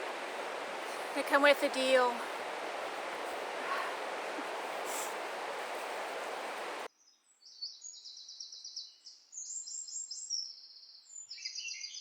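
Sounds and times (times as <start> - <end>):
steady rushing noise: 0.0 - 6.9.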